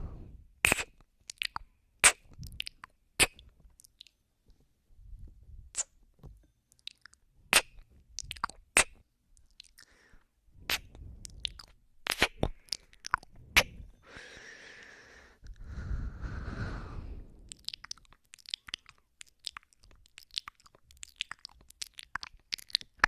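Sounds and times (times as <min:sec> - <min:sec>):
wet lip smacks and kissing clicks: 0:00.6 - 0:04.2, 0:05.8 - 0:06.0, 0:06.8 - 0:09.9, 0:10.7 - 0:13.8, 0:17.5 - 0:23.0
long breaths: 0:13.9 - 0:17.5.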